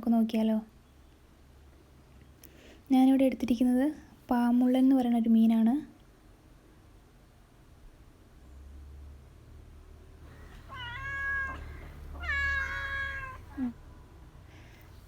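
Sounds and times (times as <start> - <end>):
cat meowing: 10.3 - 13.8.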